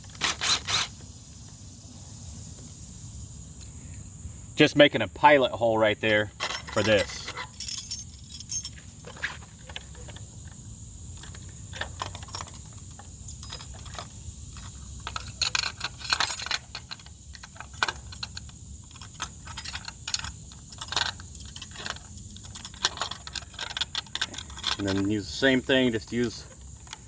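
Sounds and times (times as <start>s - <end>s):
metal gate latch clinking: 6.0s - 10.2s, 11.2s - 27.0s.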